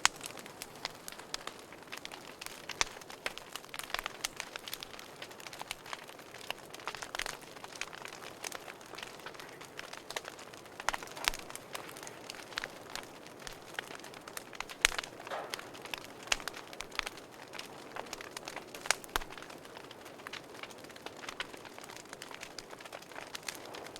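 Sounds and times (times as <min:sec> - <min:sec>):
wood fire crackling and popping: 0:00.0 - 0:23.9.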